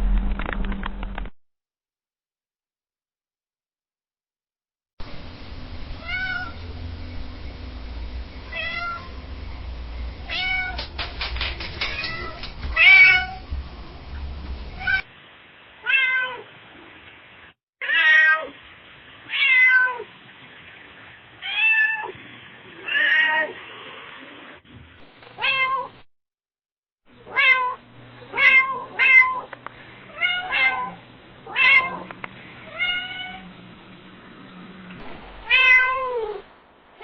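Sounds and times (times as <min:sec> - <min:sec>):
low hum: 0:00.0 - 0:01.3, 0:05.0 - 0:15.1, 0:31.0 - 0:37.0
cat meowing: 0:06.0 - 0:06.6, 0:15.8 - 0:16.4, 0:19.3 - 0:20.1, 0:27.3 - 0:29.5, 0:30.1 - 0:32.0, 0:32.7 - 0:33.4, 0:35.4 - 0:36.4.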